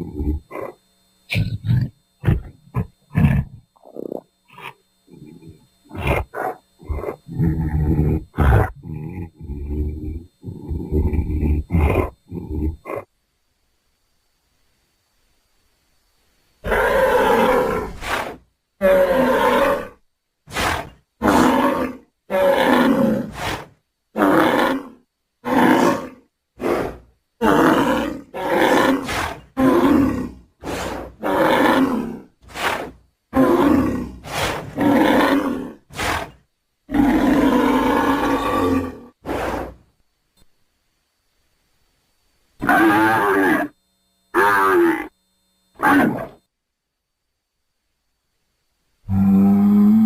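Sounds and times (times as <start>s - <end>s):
cartoon bull bellows and snorts: 0.0s - 13.1s, 16.6s - 39.8s, 42.6s - 43.7s, 44.3s - 45.1s, 45.8s - 46.4s, 49.0s - 50.0s.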